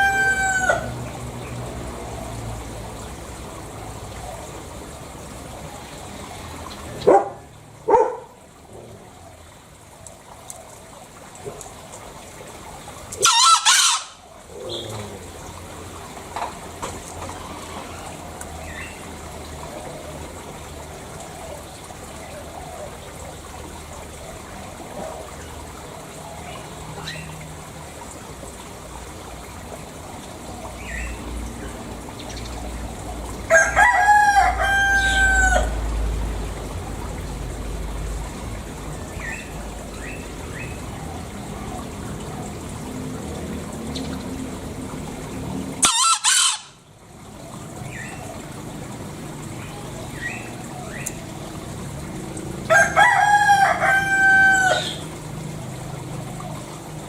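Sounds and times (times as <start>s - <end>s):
junglefowl calls: 0.0s - 1.1s, 13.1s - 15.4s, 33.5s - 35.9s, 45.8s - 46.9s, 52.7s - 55.1s.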